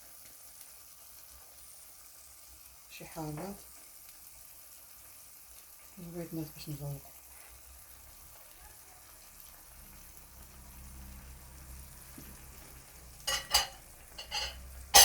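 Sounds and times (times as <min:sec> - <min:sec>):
food sizzling in a pan: 0:00.0 - 0:15.0
cookware clattering: 0:13.2 - 0:15.0.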